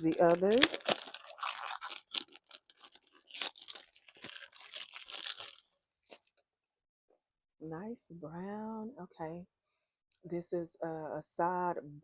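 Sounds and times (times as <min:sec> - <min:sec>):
packaging crinkling and tearing: 0:00.0 - 0:06.4.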